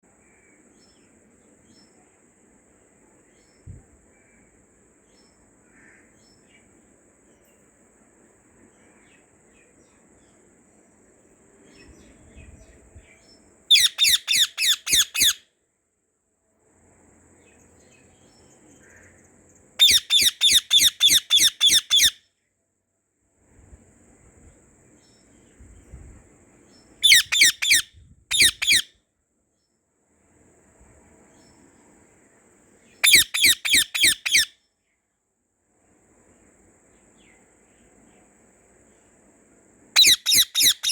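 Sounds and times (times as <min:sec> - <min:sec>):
parrot shrill calls: 0:13.7 - 0:15.4, 0:19.8 - 0:22.2, 0:27.0 - 0:28.9, 0:33.0 - 0:34.6, 0:40.0 - 0:40.9.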